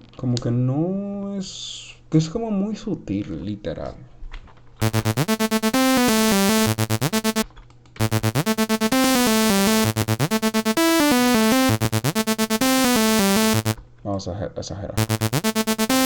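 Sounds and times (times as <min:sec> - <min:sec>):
electronic synthesizer loop: 0:04.8 - 0:07.4, 0:08.0 - 0:13.8, 0:15.0 - 0:16.0.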